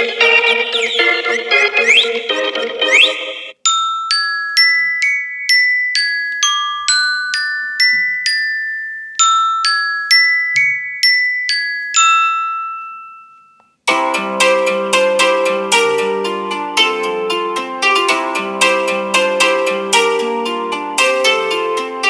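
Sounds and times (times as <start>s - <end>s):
bell-like mallet ringtone melody: 3.6s - 22.0s
plucked chords ringtone: 13.9s - 22.0s.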